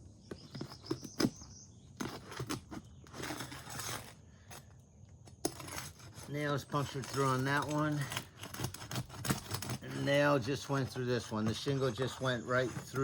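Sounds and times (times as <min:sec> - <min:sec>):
roof shingles scraping and rustling: 0:02.0 - 0:04.7, 0:05.4 - 0:13.0.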